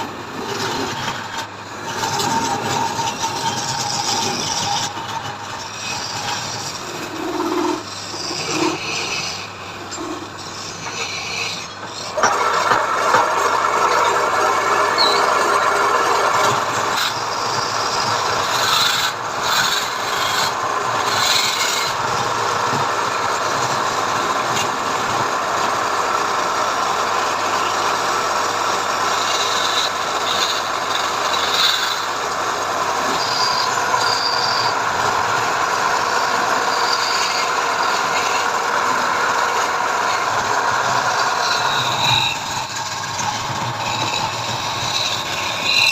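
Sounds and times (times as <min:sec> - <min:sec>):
tool rasping wood: 0:00.0 - 0:45.9.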